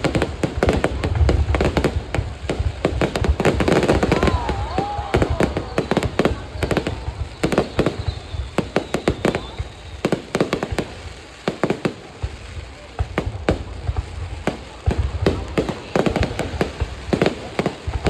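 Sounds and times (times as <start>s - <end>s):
firework bangs and crackles: 0.0s - 18.0s
rumble of firework booms: 0.0s - 18.0s
firework whistle: 3.5s - 11.0s.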